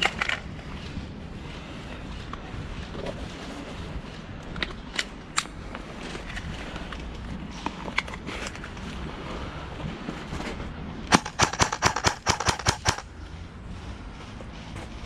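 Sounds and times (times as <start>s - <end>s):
airsoft gun shots: 11.1s - 13.0s.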